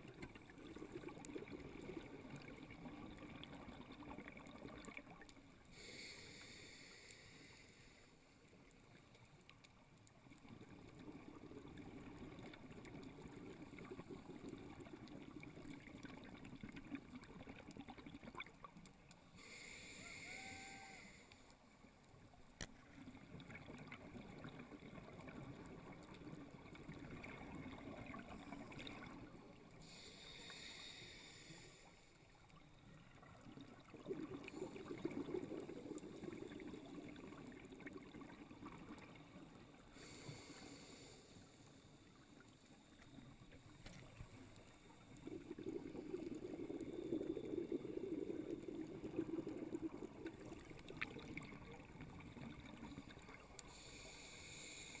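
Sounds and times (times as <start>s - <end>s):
hissing regulator inhalation: 29.8s - 32.1s, 53.7s - 55.0s
exhaled bubbles rushing: 33.1s - 39.2s, 45.0s - 53.5s.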